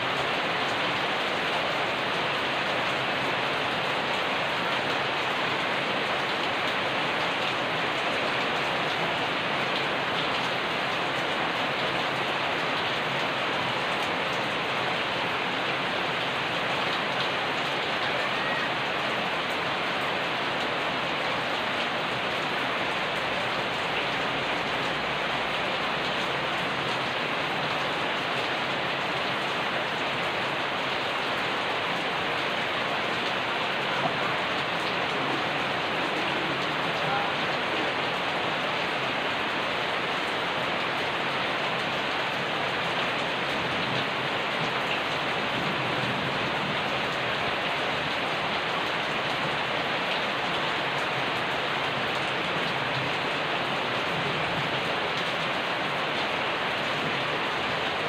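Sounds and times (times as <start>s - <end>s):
steady rain pattering: 0.0s - 58.0s.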